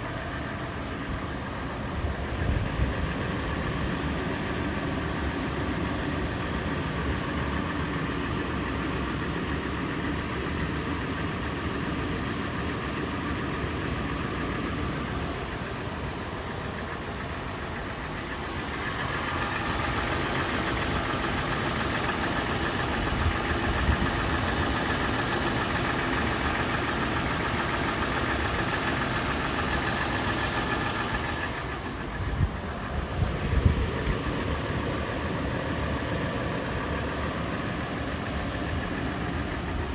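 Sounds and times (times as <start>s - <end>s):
engine idling with clattering: 0.0s - 39.9s.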